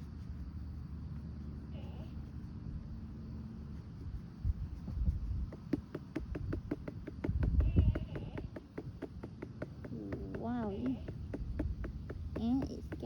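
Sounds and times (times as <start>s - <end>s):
low rumbling handling noise: 2.3s - 13.0s
hand patting a doll's back: 5.0s - 13.0s.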